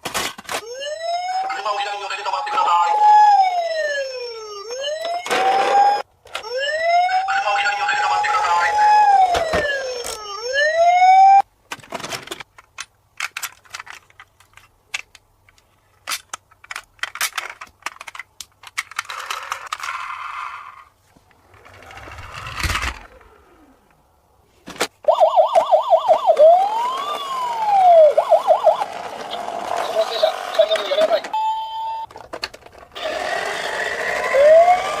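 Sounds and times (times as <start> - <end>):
toy police car electronic siren: 0.6 - 11.4, 25.0 - 32.1, 33.0 - 35.0
scattered clicks and rattles: 11.7 - 20.0.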